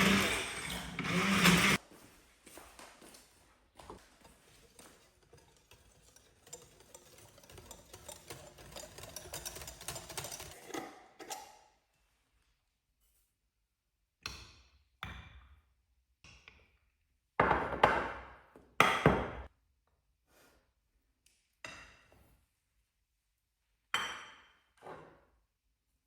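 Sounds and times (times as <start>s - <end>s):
knocks and clinks of hard objects: 3.8s - 11.4s
objects clattering: 3.8s - 11.4s.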